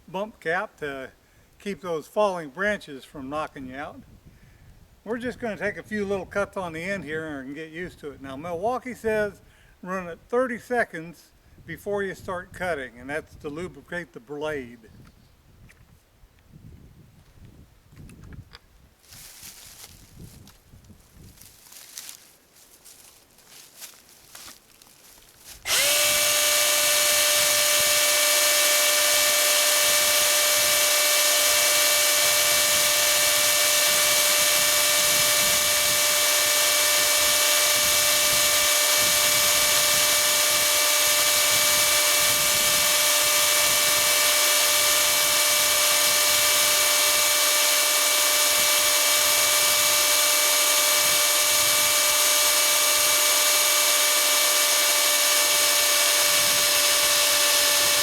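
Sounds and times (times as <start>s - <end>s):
electric chainsaw running: 25.5s - 58.0s.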